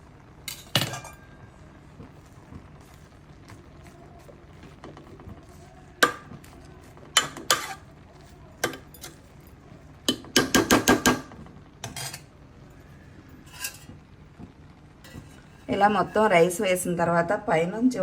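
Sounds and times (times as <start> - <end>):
metal spoon clinking on pot: 0.5 - 1.3.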